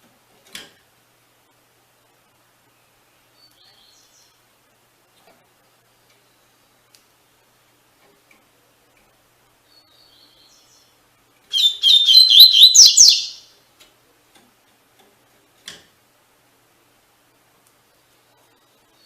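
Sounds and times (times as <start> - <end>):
faint bird chirps: 2.8 - 4.4, 9.6 - 13.5
bird song with gliding notes: 11.5 - 13.4.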